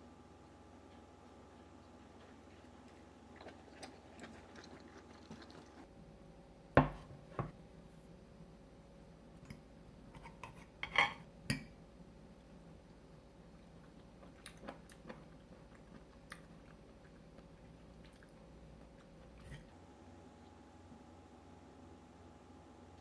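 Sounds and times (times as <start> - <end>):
cutlery clinking against a plate: 10.2 - 11.7.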